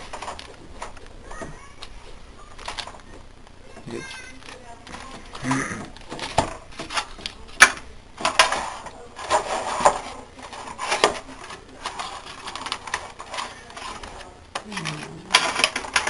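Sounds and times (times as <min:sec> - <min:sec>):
plastic and cardboard packaging crinkling: 0:03.9 - 0:16.0.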